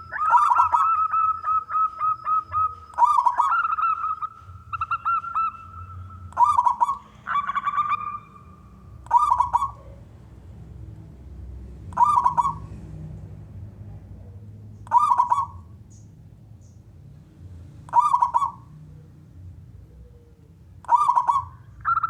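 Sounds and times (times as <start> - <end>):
dove rolling trill: 0.0 - 10.0, 11.9 - 12.8, 14.9 - 15.7, 17.9 - 18.6, 20.9 - 22.0
dove cooing: 0.0 - 10.1, 11.8 - 12.9, 14.2 - 15.8, 17.9 - 22.0.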